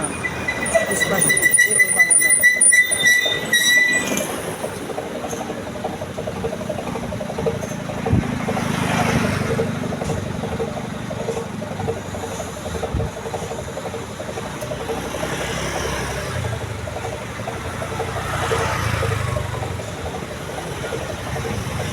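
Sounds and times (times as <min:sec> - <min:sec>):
bus and traffic engines: 0:00.0 - 0:21.9
vehicle passing: 0:07.2 - 0:11.9, 0:14.3 - 0:21.9.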